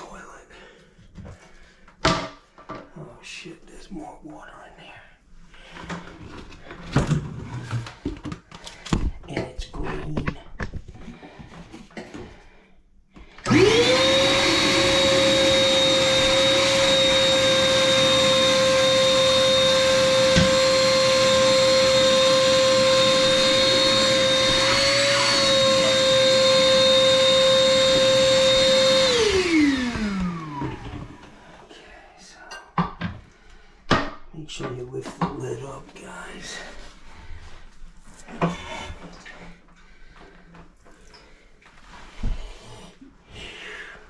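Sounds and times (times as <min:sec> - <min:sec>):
shop vacuum running: 0:13.4 - 0:31.5.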